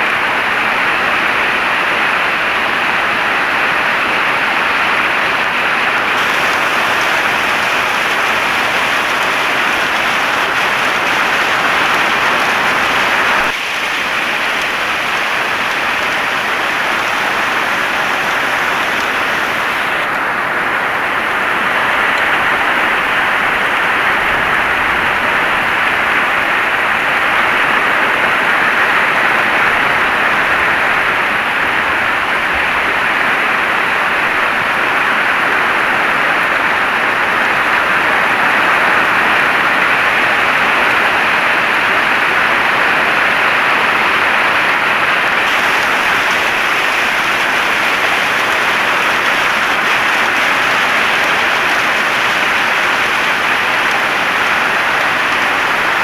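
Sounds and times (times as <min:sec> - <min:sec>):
heavy rain: 0:00.0 - 0:56.0.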